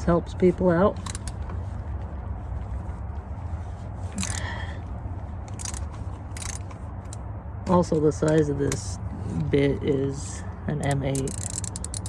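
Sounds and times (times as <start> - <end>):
steady low hum: 0.0 - 12.0
hand tools scraping and clicking: 4.1 - 4.6, 5.5 - 7.2, 10.8 - 12.0.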